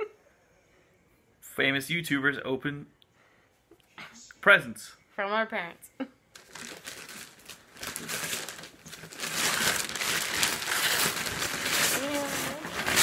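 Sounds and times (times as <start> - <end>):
paper and packaging crinkling: 6.4 - 13.0.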